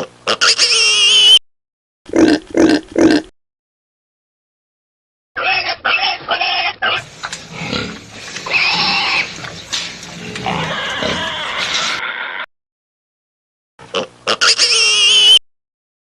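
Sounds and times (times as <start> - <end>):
pigs grunting and squealing: 2.1 - 3.3, 5.4 - 12.3.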